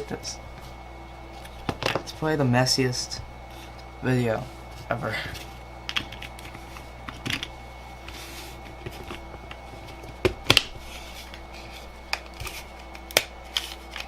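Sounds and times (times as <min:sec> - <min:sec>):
low electrical hum: 0:00.0 - 0:14.0.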